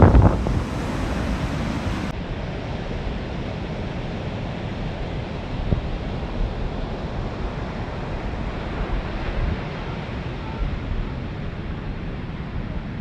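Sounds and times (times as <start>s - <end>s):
ocean waves washing on beach: 0.0s - 2.1s
wind rumbling on microphone: 0.0s - 2.1s.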